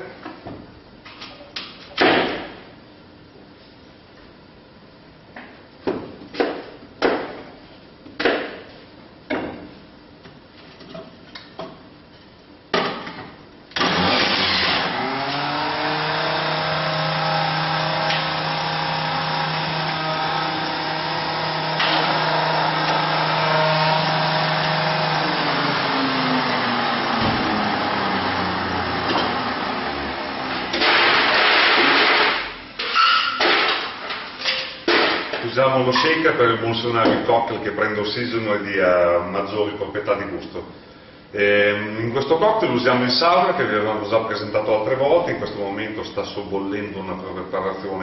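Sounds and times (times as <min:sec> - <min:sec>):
electric juicer humming: 0:13.8 - 0:32.3.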